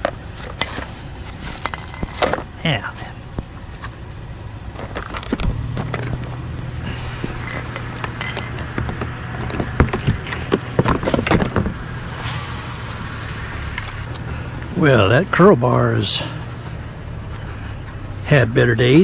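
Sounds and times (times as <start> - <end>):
steady low hum: 0.0 - 19.0
scrap metal knocks and clanks: 7.2 - 11.8.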